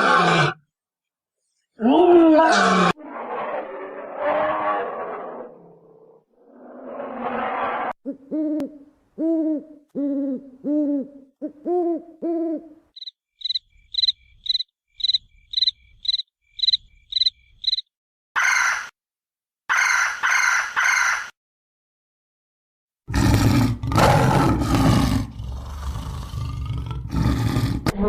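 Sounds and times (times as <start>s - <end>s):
harsh animal calls: 0.0s - 0.6s, 1.8s - 8.3s, 18.4s - 18.9s
loud drawn-out roar: 2.5s - 8.0s, 23.1s - 28.0s.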